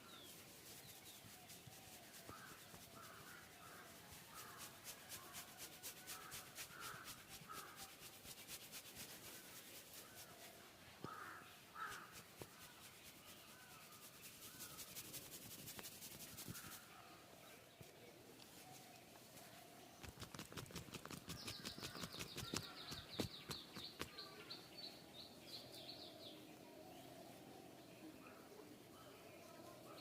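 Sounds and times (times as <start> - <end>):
hands rubbing head: 0.6 - 10.3, 11.9 - 16.8, 20.0 - 24.1
crows cawing: 11.0 - 12.2.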